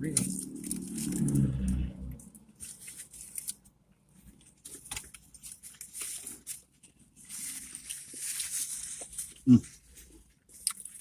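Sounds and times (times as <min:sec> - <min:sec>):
chewing food close-up: 0:00.1 - 0:04.8, 0:09.3 - 0:11.0.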